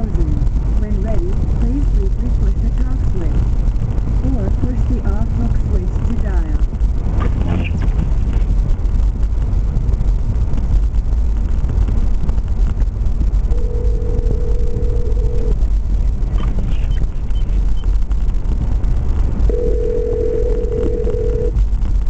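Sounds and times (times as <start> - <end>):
car driving rumble: 0.0 - 22.0
telephone ringback tone: 13.5 - 15.5, 19.5 - 21.5.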